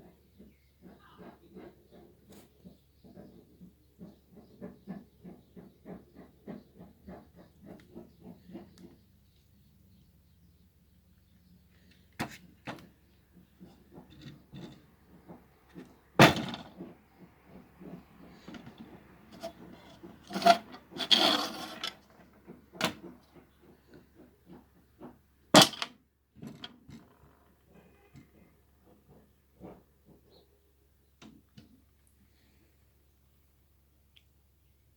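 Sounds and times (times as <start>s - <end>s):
handling clicks and rubbing: 11.7s - 25.9s
rough scraping: 13.6s - 22.9s.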